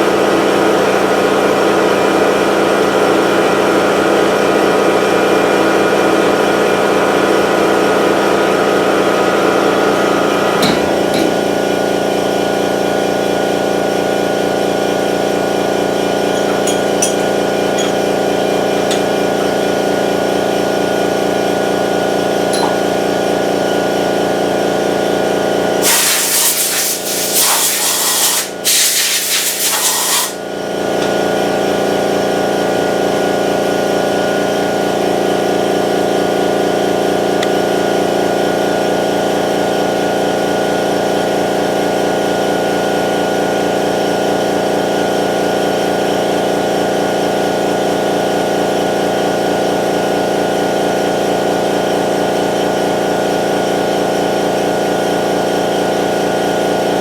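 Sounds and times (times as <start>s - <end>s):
milling machine hum: 7.4s - 25.8s, 30.5s - 32.6s
loud air hiss: 25.8s - 30.4s.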